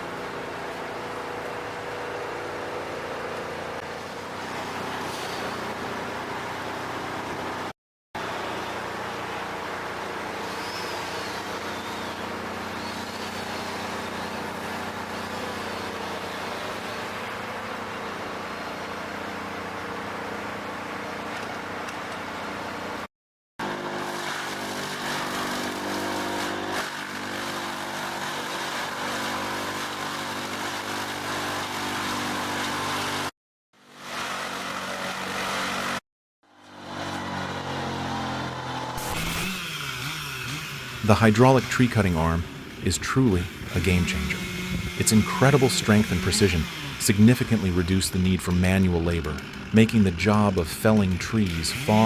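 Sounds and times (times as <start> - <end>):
machine engines running: 0.0 - 23.0, 34.1 - 52.0.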